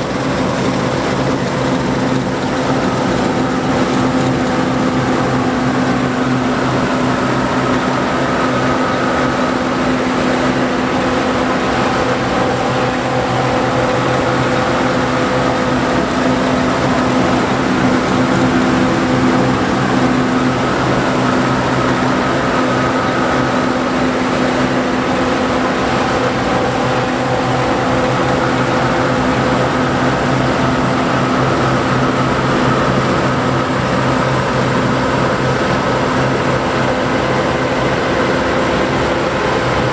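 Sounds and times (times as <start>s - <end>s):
combine engine hum: 0.0s - 39.9s
threshing machinery whirring: 0.0s - 39.9s.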